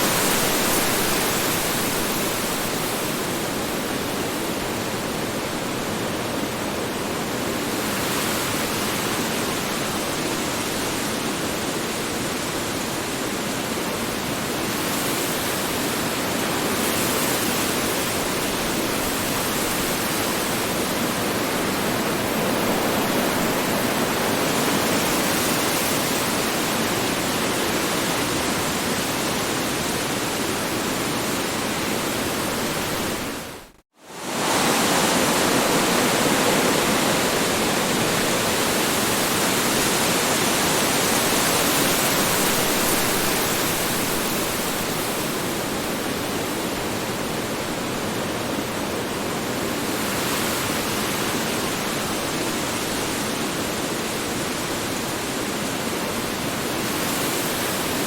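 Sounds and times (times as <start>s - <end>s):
strong wind rushing: 19.3s - 27.6s.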